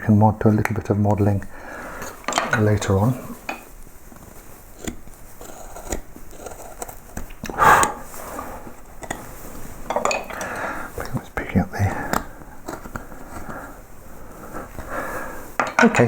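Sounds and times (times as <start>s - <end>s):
carving gouges paring wood: 0.1s - 9.9s, 10.5s - 16.0s
gouge scraping wood: 4.1s - 9.9s.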